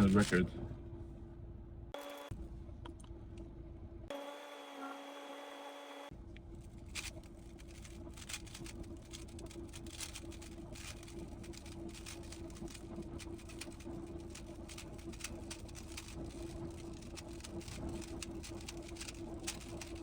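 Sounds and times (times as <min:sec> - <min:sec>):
steady low hum: 0:00.0 - 0:20.0
puzzle cube plastic layers clicking: 0:06.9 - 0:20.0.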